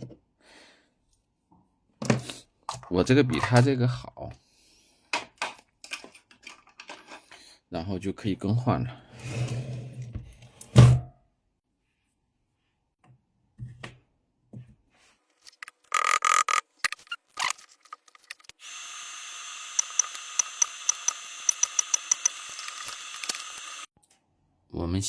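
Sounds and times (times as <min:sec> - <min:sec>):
rapid sharp clicks: 0:19.7 - 0:23.9.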